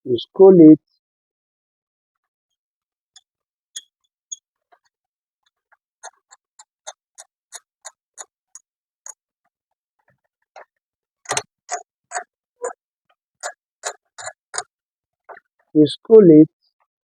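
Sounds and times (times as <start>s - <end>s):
screwdriver clicking: 11.3s - 12.2s.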